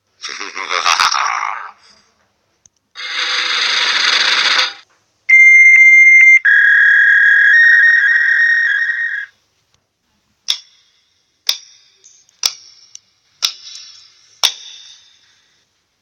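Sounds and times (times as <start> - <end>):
steady electronic tone: 6.4 - 9.3
clock ticking: 12.4 - 14.8.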